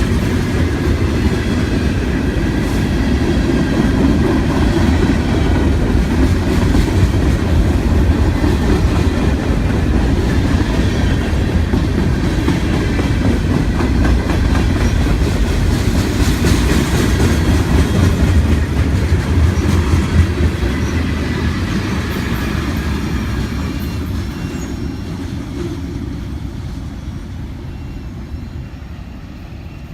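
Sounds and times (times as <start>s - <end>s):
freight train cars rumbling: 0.0s - 29.9s.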